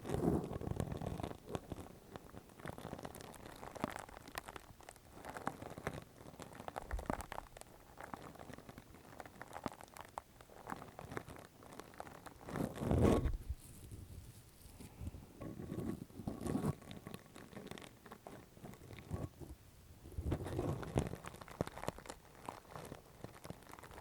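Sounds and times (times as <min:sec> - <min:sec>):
crackly scratches and clicks: 0:00.0 - 0:24.0
muffled rubbing: 0:12.4 - 0:21.7.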